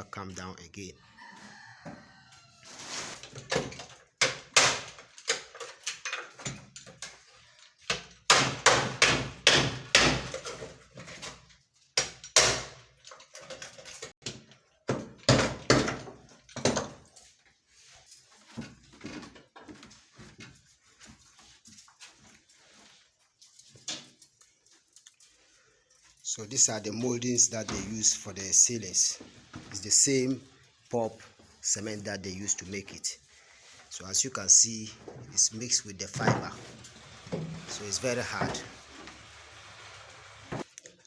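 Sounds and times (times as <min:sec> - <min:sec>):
knocks thuds and scrapes: 0:35.0 - 0:39.2.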